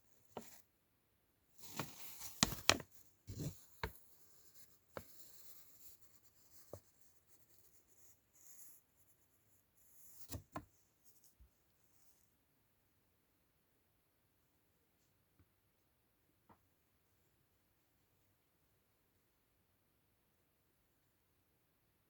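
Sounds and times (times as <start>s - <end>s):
packaging rustling: 1.6s - 2.8s.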